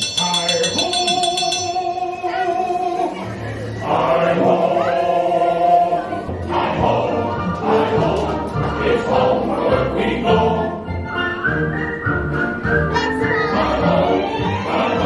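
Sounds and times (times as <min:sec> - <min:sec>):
male voices singing in chorus: 0:02.3 - 0:10.9, 0:13.6 - 0:15.0.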